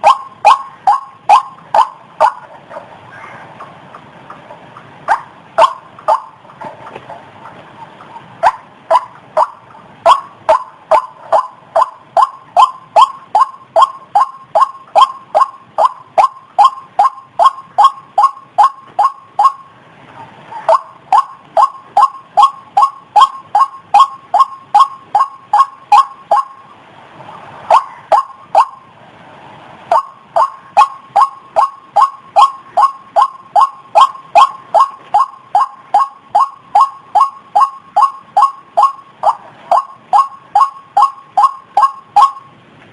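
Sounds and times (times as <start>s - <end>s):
bird calling repeated notes: 0.0s - 29.0s, 29.9s - 42.6s.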